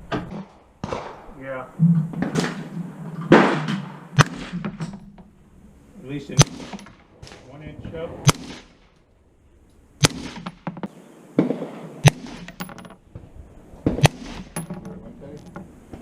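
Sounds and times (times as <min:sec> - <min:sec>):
rifle shots: 0:00.3 - 0:01.6, 0:03.3 - 0:05.0, 0:06.3 - 0:07.4, 0:08.2 - 0:09.0, 0:10.0 - 0:12.7, 0:13.8 - 0:14.7.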